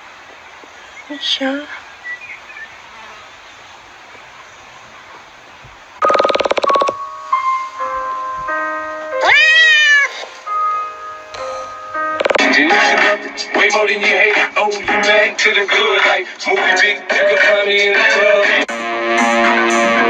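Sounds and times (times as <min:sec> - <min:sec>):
low hiss: 0:00.0 - 0:18.3
held electronic notes: 0:06.0 - 0:15.3.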